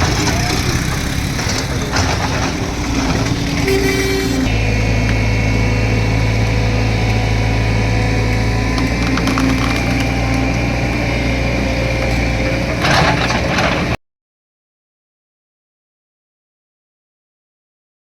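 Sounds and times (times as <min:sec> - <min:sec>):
diesel engine humming: 0:00.0 - 0:14.0.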